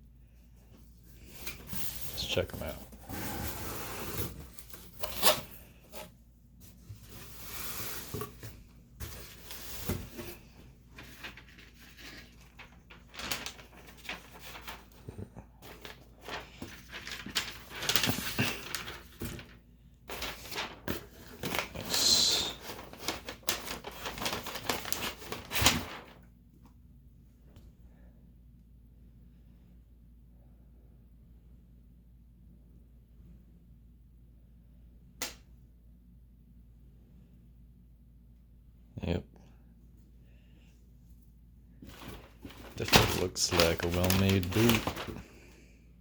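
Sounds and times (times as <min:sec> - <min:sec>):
packaging rustling: 0:07.0 - 0:26.2, 0:41.8 - 0:45.5.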